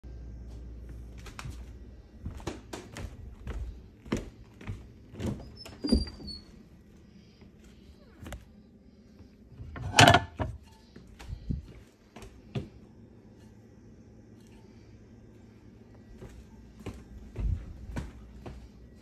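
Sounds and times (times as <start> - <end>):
knocks and clunks of kitchen items: 9.6 - 10.7.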